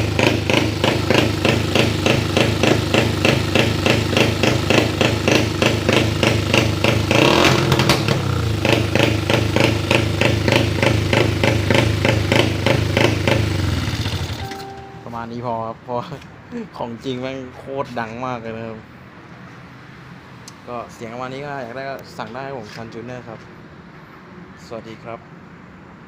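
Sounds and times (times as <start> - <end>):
motorcycle engine choppy idle: 0.0 - 14.5.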